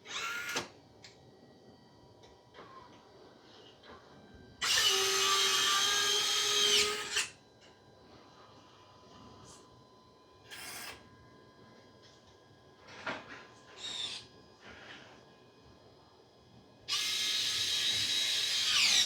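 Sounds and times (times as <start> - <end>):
small electric motor whirring: 4.6 - 7.3, 13.8 - 14.2, 16.9 - 19.0.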